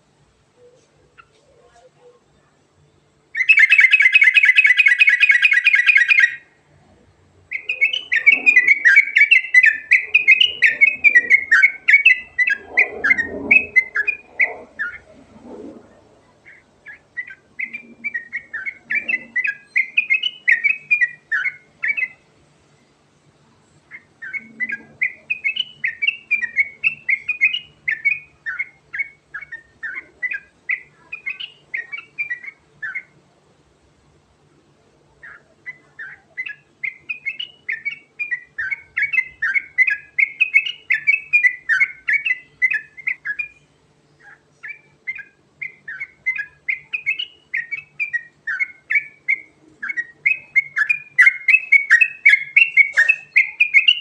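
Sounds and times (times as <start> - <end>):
bird singing quick chirps: 7.5 - 15.1, 35.2 - 54.0.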